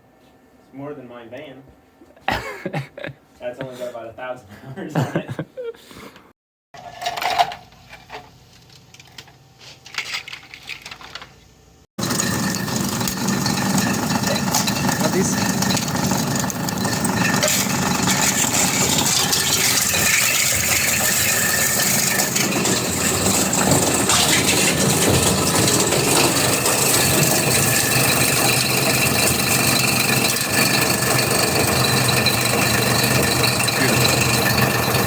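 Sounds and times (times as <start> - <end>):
cutting rotor rattling: 12.0 - 35.0
granulator motor humming: 12.0 - 35.0.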